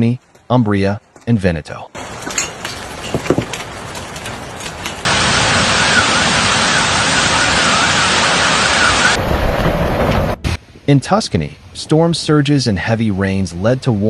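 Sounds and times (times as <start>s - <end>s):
heavy rain pouring: 2.0s - 10.4s
warbling alarm tone: 5.1s - 9.2s.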